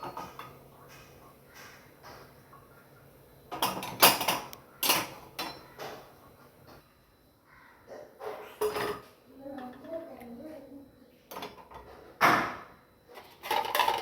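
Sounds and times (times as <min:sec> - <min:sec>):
dishes clattering into dishwasher rack: 0:03.5 - 0:05.7, 0:13.2 - 0:14.0.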